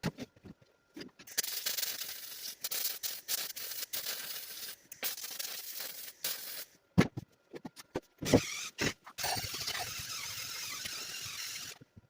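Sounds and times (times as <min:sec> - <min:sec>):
welder crackling and sizzling: 0:01.3 - 0:06.8.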